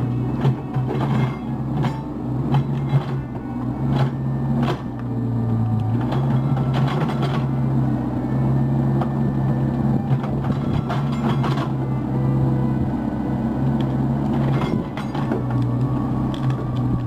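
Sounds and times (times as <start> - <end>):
diesel engine running: 0.0 - 17.0
sharp metallic knocks: 0.4 - 4.9.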